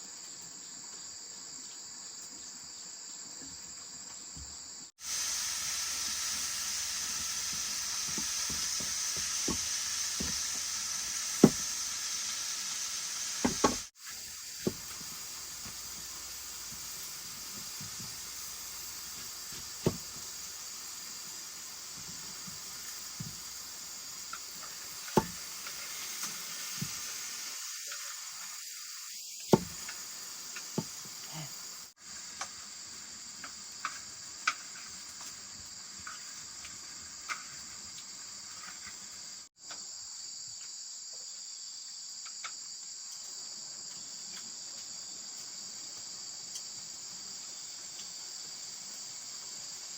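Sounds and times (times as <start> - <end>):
food sizzling in a pan: 4.9 - 39.6, 43.9 - 49.9
utensil knocking on pan: 11.4 - 11.8, 13.4 - 13.9.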